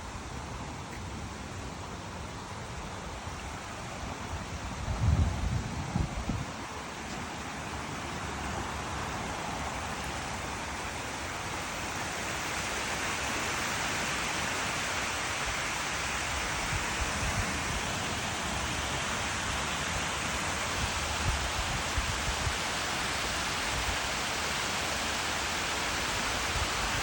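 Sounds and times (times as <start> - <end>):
waterfall rushing: 0.0 - 27.0.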